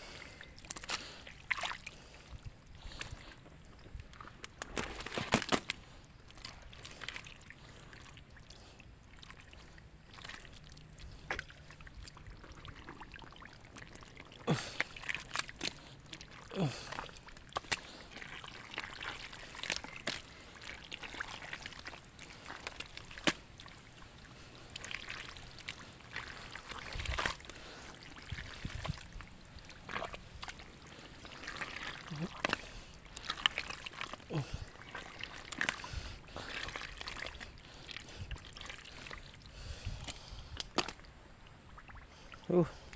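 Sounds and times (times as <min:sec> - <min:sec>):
pond water sloshing and trickling: 0:00.0 - 0:42.9
sharp water splashes: 0:12.4 - 0:39.3.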